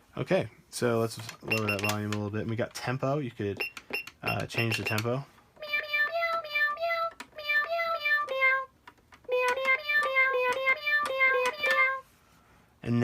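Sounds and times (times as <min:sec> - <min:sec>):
toy keyboard electronic tune: 0:09.3 - 0:12.0.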